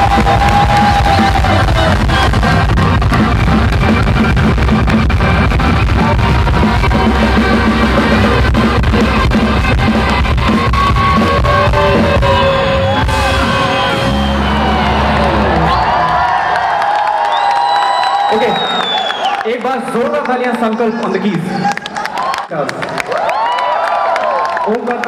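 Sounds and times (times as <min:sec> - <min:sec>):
live rock band playing: 0:00.0 - 0:16.2.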